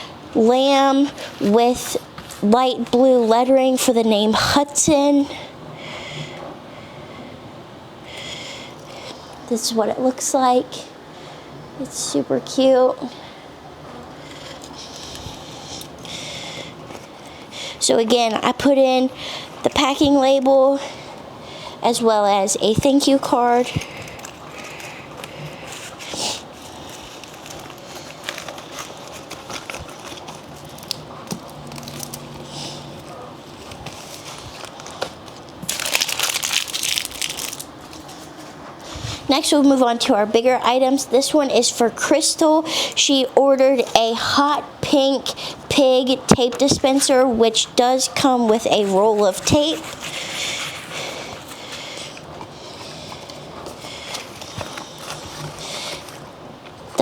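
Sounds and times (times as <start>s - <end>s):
plastic bubble mailer crinkling: 23.6s - 38.5s.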